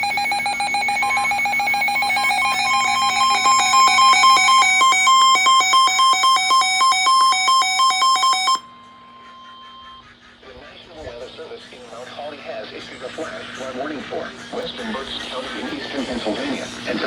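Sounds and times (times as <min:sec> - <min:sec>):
rapid two-pitch alarm beeping: 0:00.0 - 0:10.1
steady warning alarm tone: 0:00.0 - 0:10.1.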